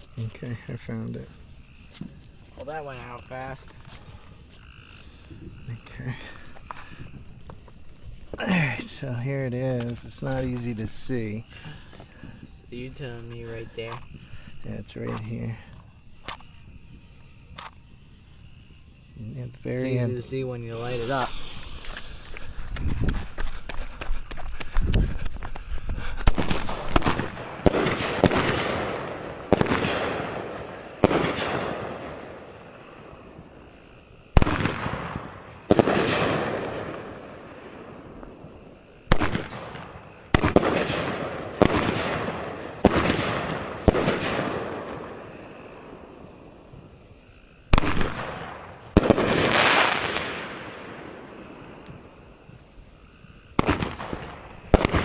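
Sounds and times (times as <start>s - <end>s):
firework bangs: 20.7s - 23.8s, 26.2s - 46.6s, 47.7s - 52.5s, 53.5s - 55.0s.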